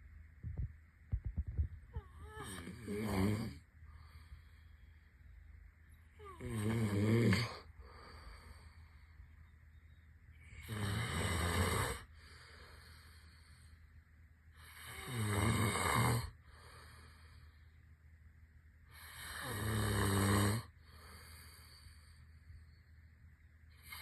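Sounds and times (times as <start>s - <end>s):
quiet breathing: 0.0s - 24.0s
low-pitched snoring: 1.9s - 4.8s, 6.1s - 9.2s, 10.4s - 13.8s, 14.6s - 17.6s, 18.9s - 22.8s.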